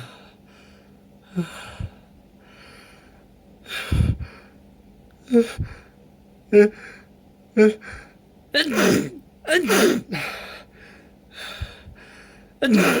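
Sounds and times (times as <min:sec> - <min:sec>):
person sneezing: 0:08.6 - 0:10.3, 0:12.6 - 0:13.0.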